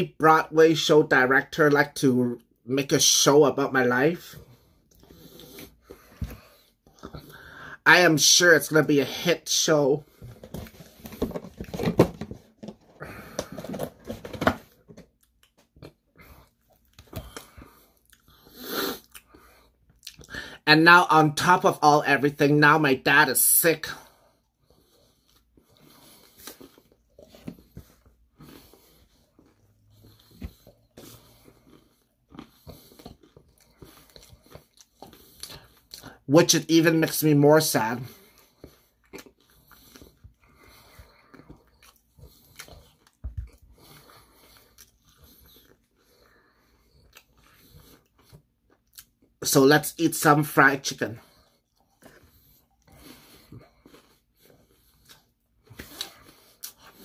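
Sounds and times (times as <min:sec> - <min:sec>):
person chewing crispy chicken: 0:15.0 - 0:20.5, 0:24.2 - 0:36.3, 0:38.0 - 0:49.4, 0:51.2 - 0:57.0.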